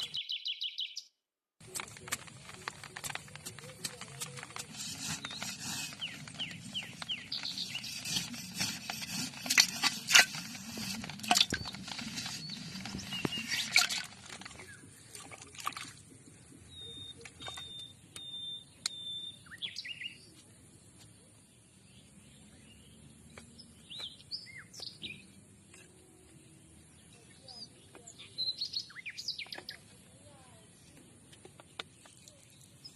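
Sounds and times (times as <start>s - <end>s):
birds calling: 2.6s - 15.2s.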